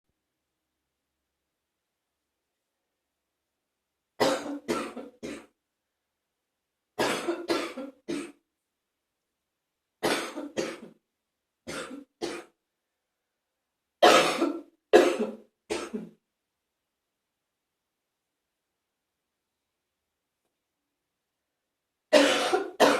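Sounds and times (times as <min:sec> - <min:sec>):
person coughing wetly: 0:04.2 - 0:05.5, 0:07.0 - 0:08.4, 0:10.0 - 0:11.0, 0:11.7 - 0:12.6, 0:14.0 - 0:16.2, 0:22.1 - 0:22.9.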